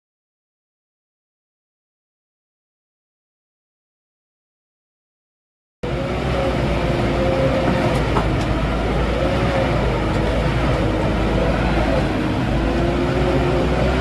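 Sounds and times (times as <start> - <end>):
shredding machine rumbling: 5.8 - 14.0.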